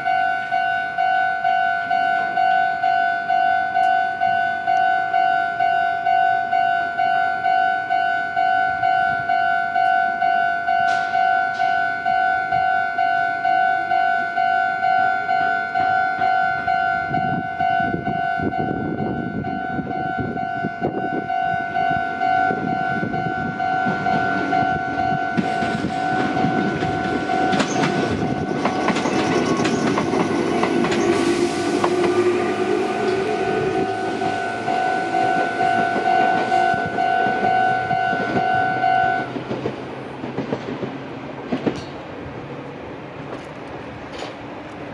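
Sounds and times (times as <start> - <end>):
level-crossing bell ringing: 0.0 - 28.7, 33.1 - 39.3
train wheels clacking on rails: 10.8 - 11.9, 21.9 - 42.2
train motor whine: 20.9 - 39.7.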